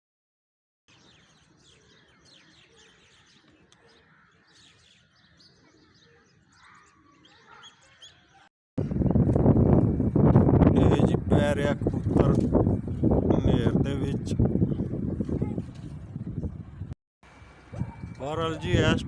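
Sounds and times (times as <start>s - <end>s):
small birds chirping: 0.9s - 9.3s.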